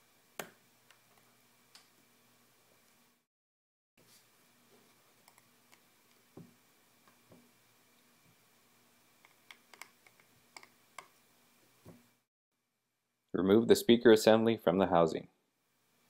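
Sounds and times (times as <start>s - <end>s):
faint electrical hum: 4.0s - 16.0s.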